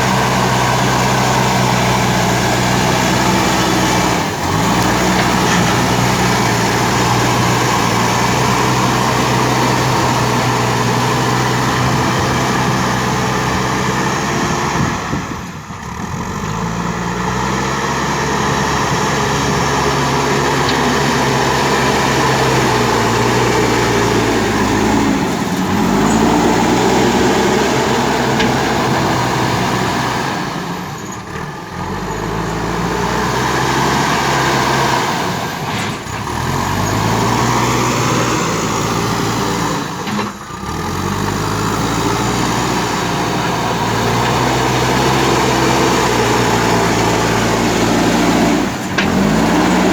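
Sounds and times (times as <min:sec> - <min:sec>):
diesel engine working hard: 0:00.0 - 0:49.9.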